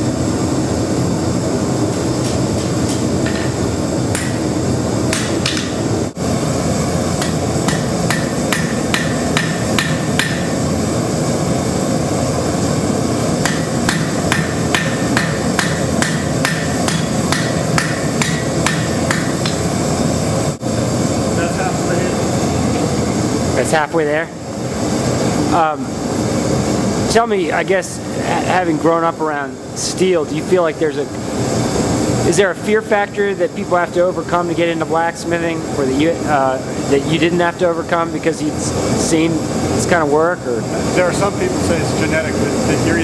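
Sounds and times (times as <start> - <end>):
hammer striking steel on anvil: 2.2 - 4.5, 5.1 - 5.8, 7.2 - 10.6, 13.4 - 19.6
forge roaring: 3.0 - 26.4.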